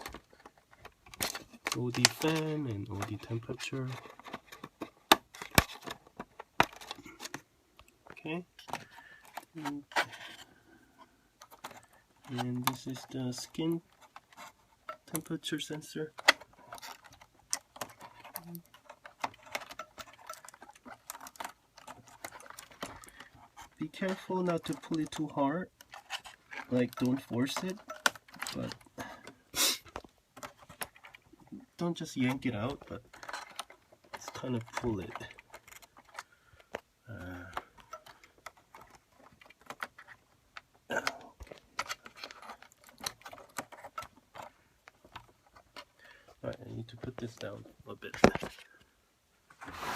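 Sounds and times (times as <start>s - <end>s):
fingers clicking cable connectors: 16.1s - 31.2s, 32.2s - 45.9s.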